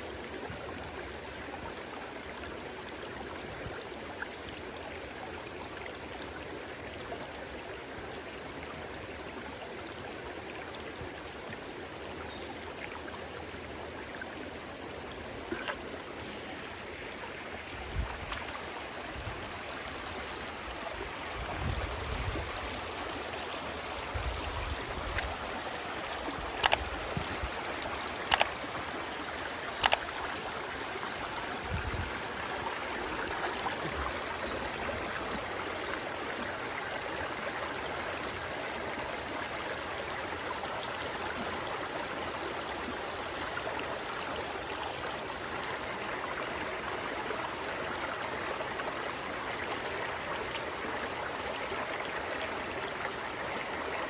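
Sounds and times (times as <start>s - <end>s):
stream water flowing: 0.0s - 54.0s
sharp clicks: 26.5s - 26.9s, 27.8s - 28.6s, 29.8s - 30.1s.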